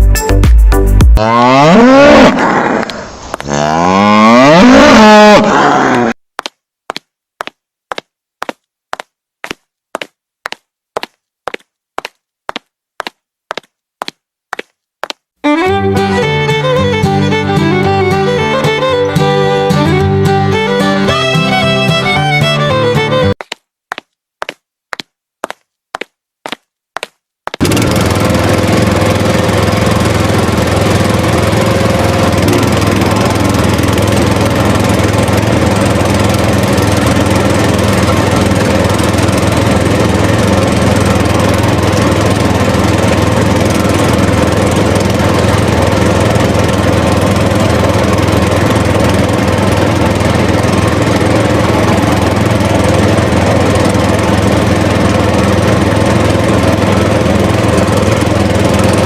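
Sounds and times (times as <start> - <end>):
small engine running: 1.2 - 6.2, 15.5 - 23.5, 27.5 - 59.0.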